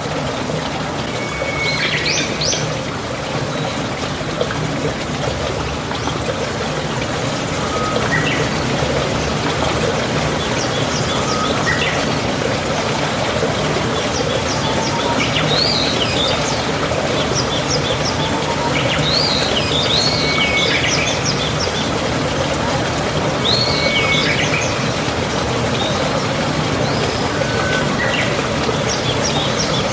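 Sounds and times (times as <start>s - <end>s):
birds calling: 1.1s - 22.5s.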